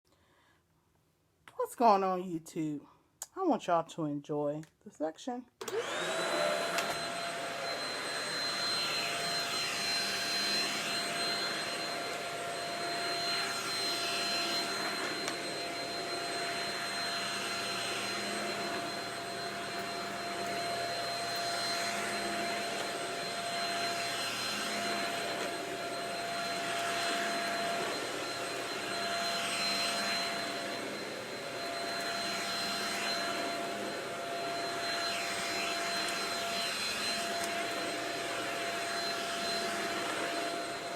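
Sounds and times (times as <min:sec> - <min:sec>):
stick vacuum running: 0:05.6 - 0:40.9.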